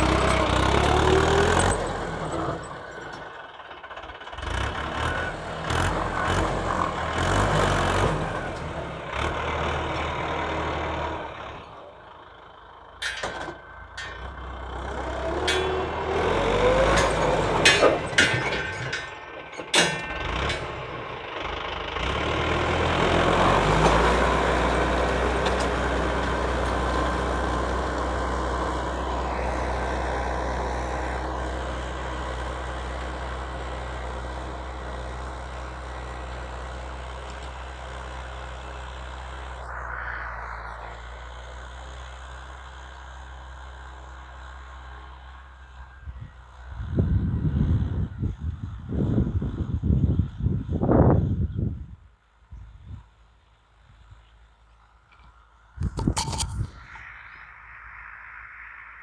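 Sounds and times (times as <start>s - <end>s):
tractor engine running: 0.0s - 51.4s, 53.2s - 57.2s
sharp clanks and knocks: 12.9s - 21.2s.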